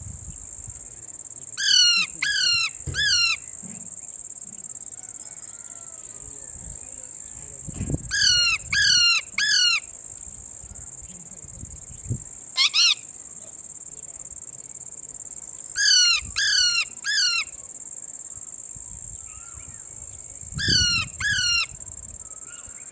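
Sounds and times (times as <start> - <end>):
high-pitched insect drone: 0.0 - 14.4, 15.1 - 22.9
parrot calling: 1.6 - 3.5, 8.1 - 9.9, 12.6 - 13.0, 15.8 - 17.5, 20.6 - 21.7.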